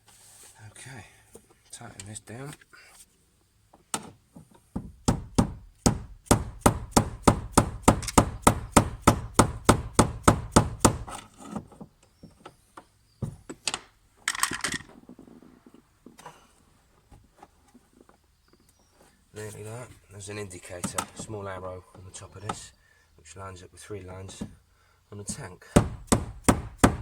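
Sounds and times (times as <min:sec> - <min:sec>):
rapid sharp knocks: 0:05.0 - 0:11.2, 0:25.8 - 0:27.0.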